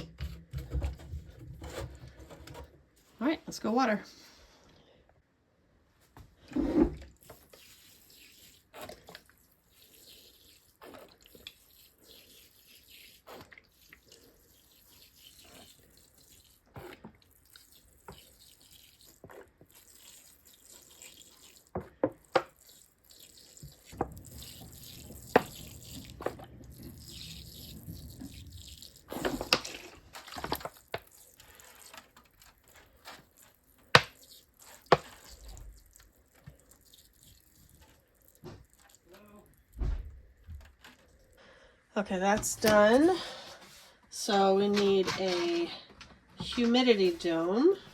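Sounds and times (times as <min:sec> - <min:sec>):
water dripping onto trays: 0:13.3 - 0:39.8.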